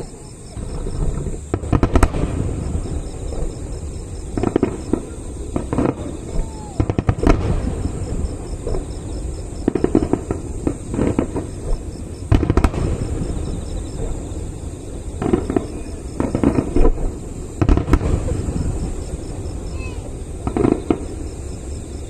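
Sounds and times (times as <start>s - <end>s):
fireworks crackling bangs: 0.0s - 22.0s.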